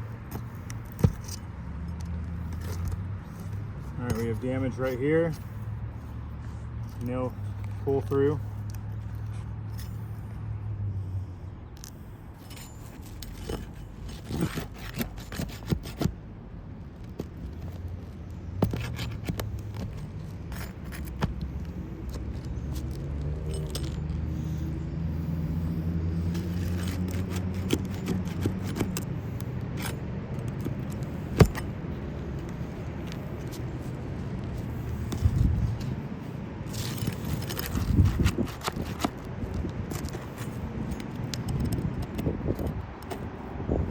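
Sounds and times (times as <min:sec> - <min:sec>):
metal scraping against shingles: 0:00.0 - 0:10.4, 0:11.8 - 0:16.2, 0:16.9 - 0:43.3
low engine hum: 0:15.8 - 0:43.9.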